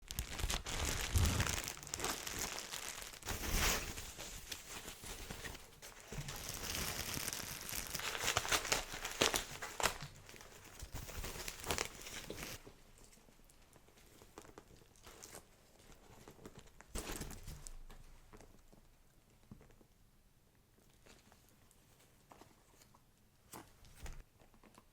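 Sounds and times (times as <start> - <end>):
packaging tearing: 0.0 - 4.4, 5.3 - 12.6
packaging crinkling and rustling: 0.0 - 18.8.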